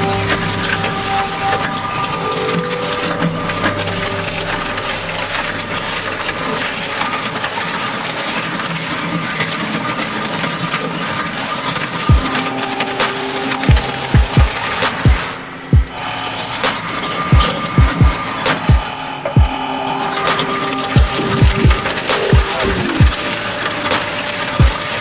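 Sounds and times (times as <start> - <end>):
machine crushing material: 0.0 - 25.0.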